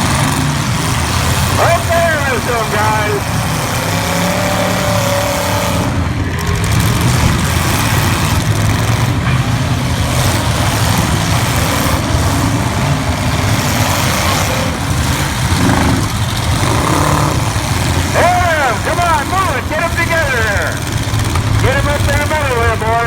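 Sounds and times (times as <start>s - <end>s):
car engines droning: 0.0s - 23.0s.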